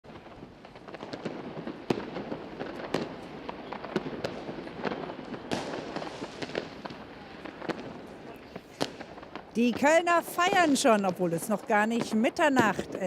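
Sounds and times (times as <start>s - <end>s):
fireworks and firecrackers banging: 0.0s - 13.0s
firework hiss: 0.6s - 7.8s.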